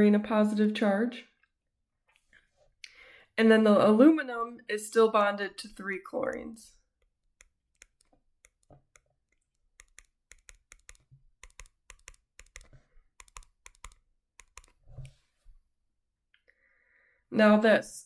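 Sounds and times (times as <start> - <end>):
faint keyboard typing: 6.1 - 6.6, 7.3 - 15.2.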